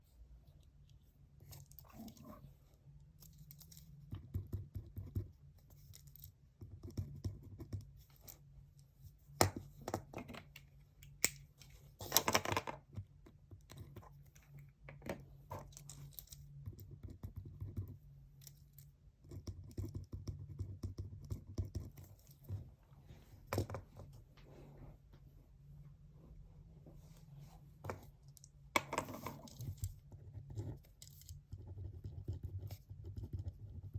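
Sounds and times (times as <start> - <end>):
low steady hum: 0.0 - 33.9
scratching on paper: 29.0 - 33.9.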